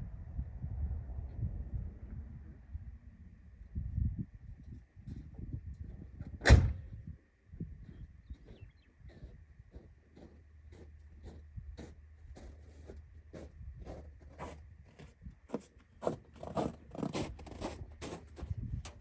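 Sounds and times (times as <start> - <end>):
hands scraping and rubbing wiring: 14.3 - 19.0.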